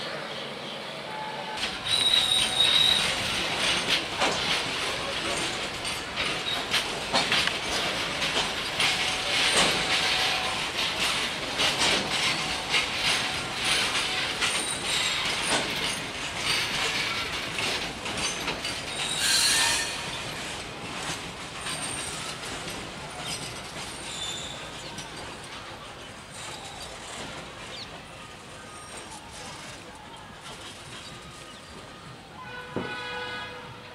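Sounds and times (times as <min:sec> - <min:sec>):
high wheel squeals: 0:01.1 - 0:03.4, 0:12.2 - 0:17.3, 0:18.3 - 0:20.5, 0:21.7 - 0:25.4
wheels clattering over rail joints: 0:01.6 - 0:33.2.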